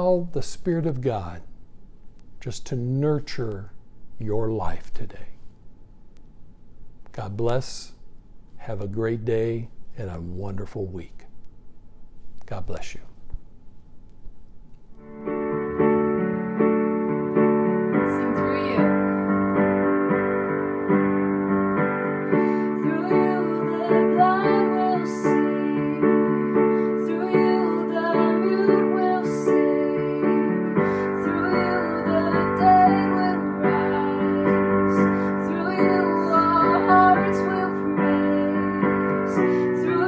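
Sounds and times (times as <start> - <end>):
keyboard playing slow chords: 15.0 - 40.0.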